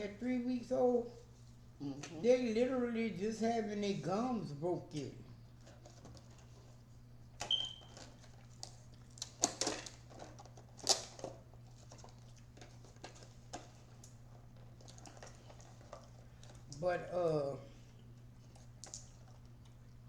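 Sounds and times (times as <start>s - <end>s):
steady low hum: 0.0s - 20.0s
plastic packaging crinkling: 5.5s - 16.8s.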